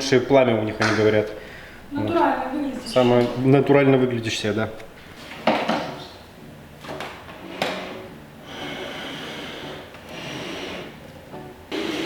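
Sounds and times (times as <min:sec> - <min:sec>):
background music: 0:06.2 - 0:12.0.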